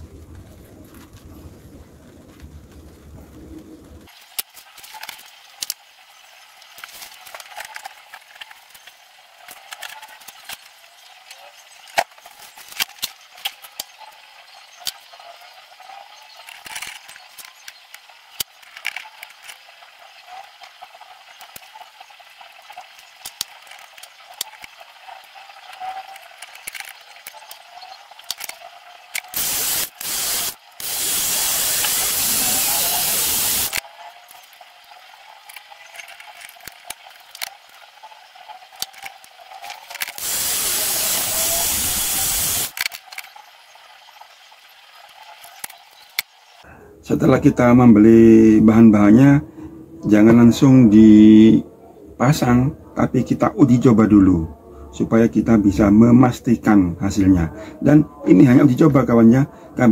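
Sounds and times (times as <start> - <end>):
loud hiss: 29.3 - 33.8, 40.2 - 42.8.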